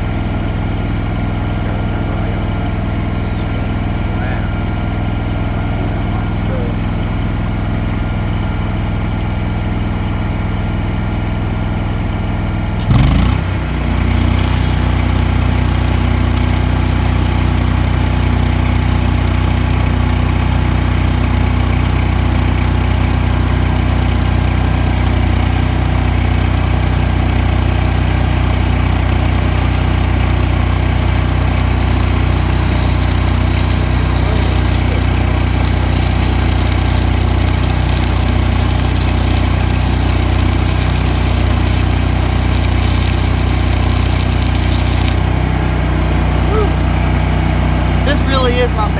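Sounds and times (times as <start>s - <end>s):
engine-driven welder running: 0.0s - 48.9s
welding arc hiss: 1.2s - 6.9s, 12.8s - 48.9s
sharp burst: 25.4s - 47.0s.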